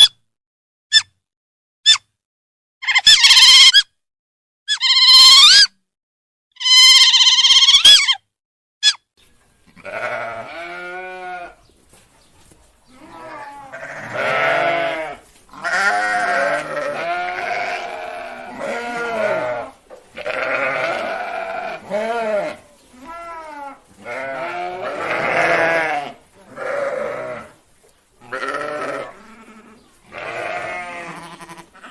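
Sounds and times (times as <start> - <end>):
farm animals bleating: 4.7 - 5.6, 6.6 - 8.2, 9.6 - 11.6, 12.9 - 27.6, 28.2 - 31.9.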